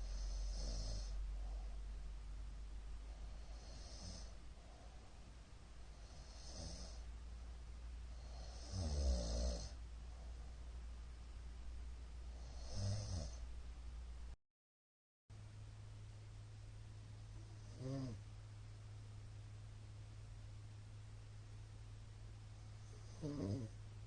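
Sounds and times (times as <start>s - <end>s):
man snoring: 0.0s - 1.7s, 3.1s - 4.8s, 5.9s - 7.0s, 8.1s - 9.8s, 12.3s - 13.4s, 17.6s - 18.2s, 22.8s - 23.8s
steady low hum: 0.0s - 14.4s, 15.3s - 24.0s.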